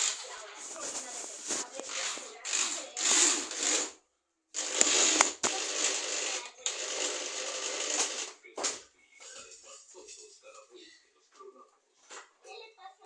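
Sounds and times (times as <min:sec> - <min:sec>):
electric drill grinding: 0:01.9 - 0:04.0, 0:04.6 - 0:08.3.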